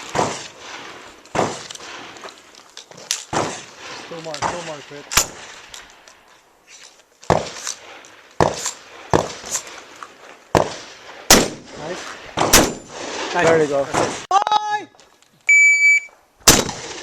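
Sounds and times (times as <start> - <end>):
shotgun shots: 0.0 - 2.2, 3.3 - 5.6, 7.3 - 7.7, 8.4 - 9.7, 10.5 - 14.3, 16.4 - 17.0.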